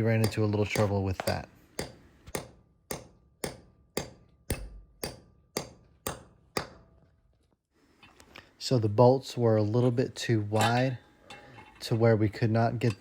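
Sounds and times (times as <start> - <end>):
hammer striking steel bolt: 0.0 - 7.2
faint metallic ring: 10.5 - 12.0.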